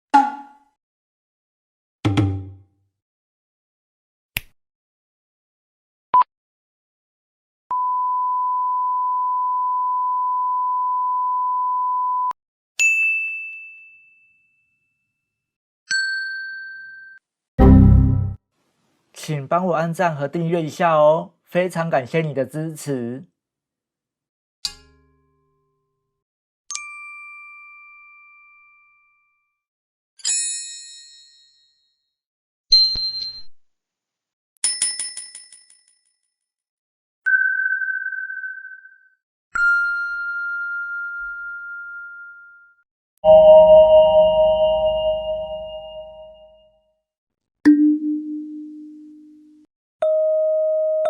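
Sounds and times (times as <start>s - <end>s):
pure bell-like ding: 43.3s - 46.6s.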